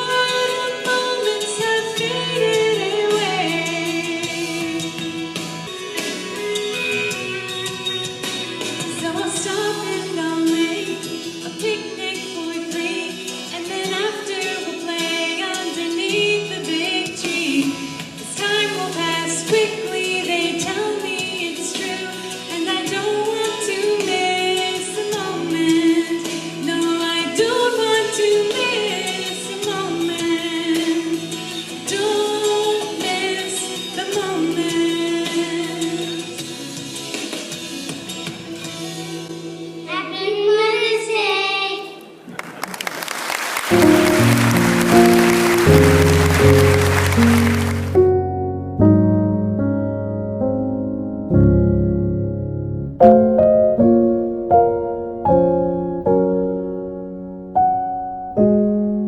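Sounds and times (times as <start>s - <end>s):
woman singing: 0.0s - 5.4s, 8.8s - 36.6s
instrumental accompaniment: 43.6s - 59.0s.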